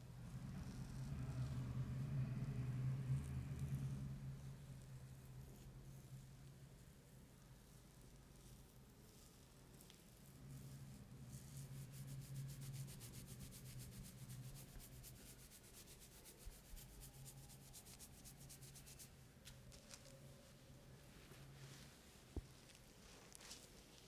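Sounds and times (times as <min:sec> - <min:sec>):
faint low hum: 0:00.0 - 0:24.0
hands rubbing skin: 0:11.6 - 0:19.1.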